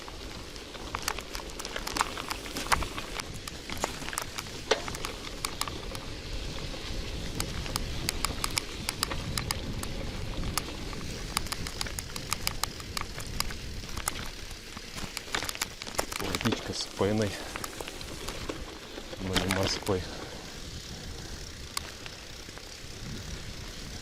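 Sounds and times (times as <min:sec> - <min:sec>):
bicycle clicks and rattles: 0:00.0 - 0:24.0
bicycle tyres rumbling through mud: 0:00.0 - 0:24.0.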